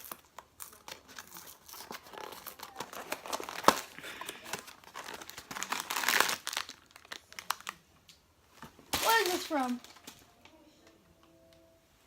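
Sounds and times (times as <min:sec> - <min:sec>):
snack packaging crinkling: 0:00.0 - 0:07.8, 0:08.9 - 0:10.3.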